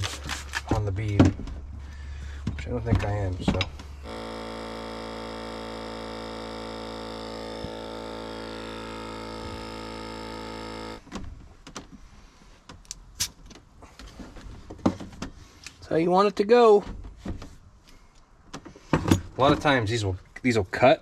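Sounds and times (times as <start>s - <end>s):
electric air compressor running: 3.9s - 11.0s.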